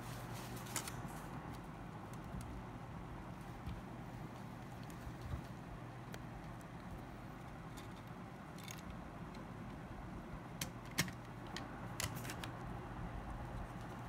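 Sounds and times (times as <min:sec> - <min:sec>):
steady low hum: 0:00.0 - 0:14.0
small parts and tools clicking: 0:06.1 - 0:09.8.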